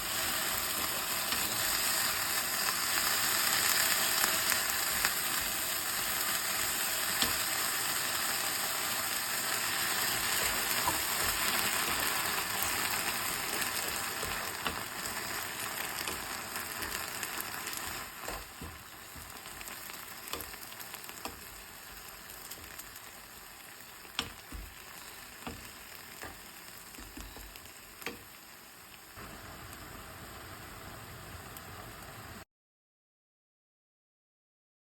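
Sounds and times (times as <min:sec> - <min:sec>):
food sizzling in a frying pan: 0:00.0 - 0:32.4.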